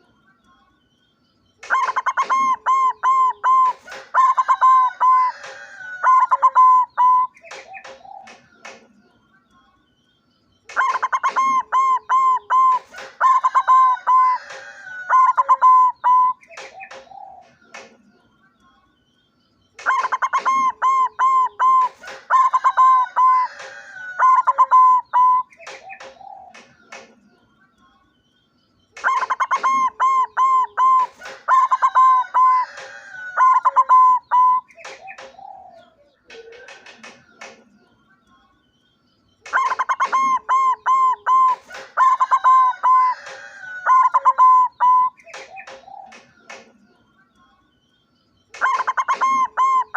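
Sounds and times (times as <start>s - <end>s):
dove cooing: 1.6s - 8.5s, 10.7s - 17.6s, 19.8s - 26.7s, 29.0s - 37.2s, 39.5s - 46.7s, 48.6s - 49.9s.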